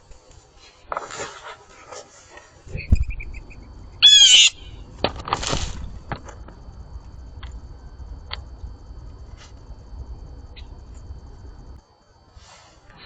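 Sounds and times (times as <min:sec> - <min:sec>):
blue jay harsh call: 0:03.2 - 0:04.8
noisy rustle: 0:04.8 - 0:13.0.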